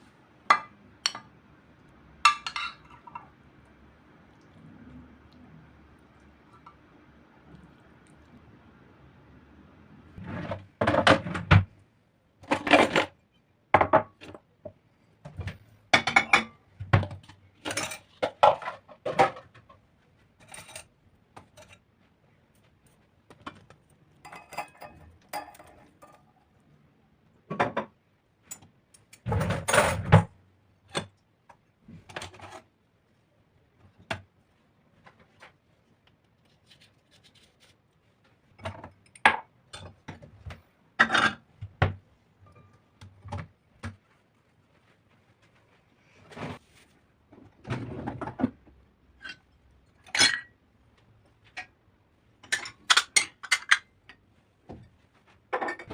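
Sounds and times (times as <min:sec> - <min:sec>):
dishes and cutlery clattering: 0:02.3 - 0:03.4, 0:15.9 - 0:19.7, 0:24.2 - 0:26.3, 0:41.0 - 0:41.5, 0:49.2 - 0:50.5, 0:52.4 - 0:54.2, 0:55.6 - 0:55.9.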